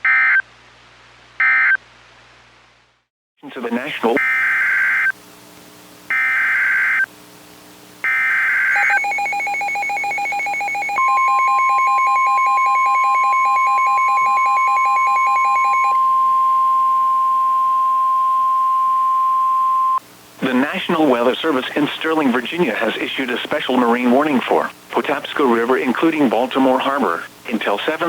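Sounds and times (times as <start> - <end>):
steady warning alarm tone: 6.1 - 7.1, 8.0 - 20.0
digital data tone bursts: 8.1 - 16.0
rapid pulsing beep: 8.1 - 17.5.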